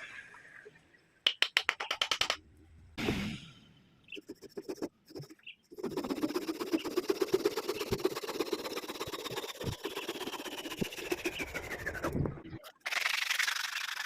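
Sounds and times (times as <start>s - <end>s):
rhythmic rubbing on spinning wood: 4.2s - 12.2s.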